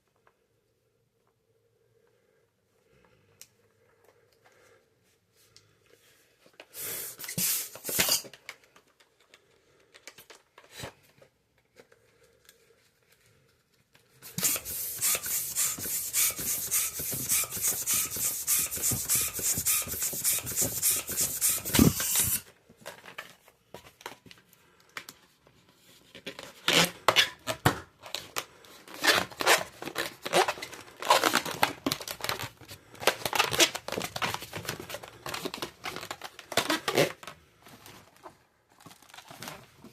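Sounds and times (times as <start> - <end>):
balloons rubbing and squeaking: 14.2 - 22.5, 28.9 - 32.0.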